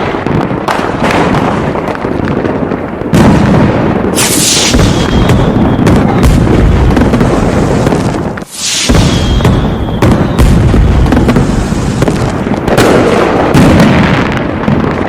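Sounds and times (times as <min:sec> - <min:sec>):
firework boom: 0:03.1 - 0:15.0
firework crackling hiss: 0:03.6 - 0:15.0
faint high whistle: 0:04.2 - 0:06.0, 0:08.5 - 0:10.6.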